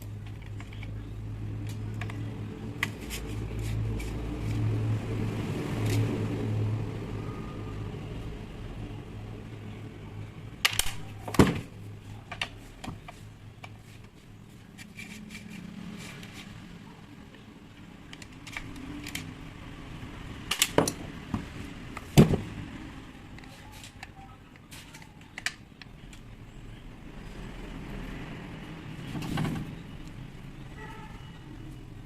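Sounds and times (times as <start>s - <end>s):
tools clicking and knocking: 18.1s - 19.3s, 20.5s - 22.4s.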